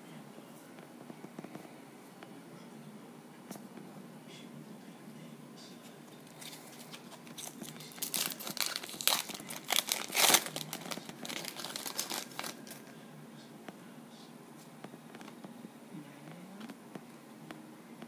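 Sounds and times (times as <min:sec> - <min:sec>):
foil wrapper tearing and crinkling: 0:06.4 - 0:12.9.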